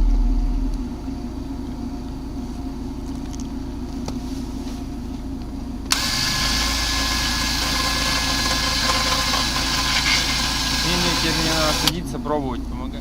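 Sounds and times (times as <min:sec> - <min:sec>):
all-terrain vehicle engine idling: 0:04.9 - 0:13.0
faint high whine: 0:05.8 - 0:13.0.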